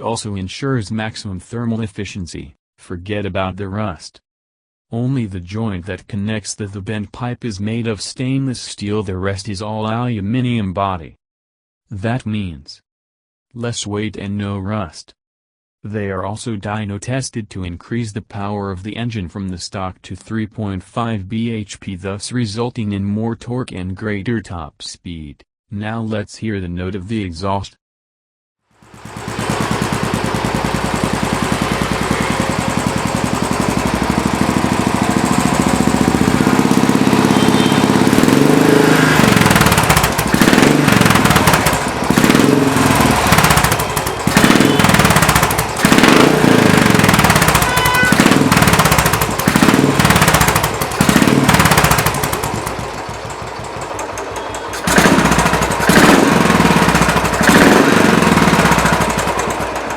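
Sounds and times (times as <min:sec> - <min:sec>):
motorcycle engine idling and revving: 0:28.8 - 0:59.9.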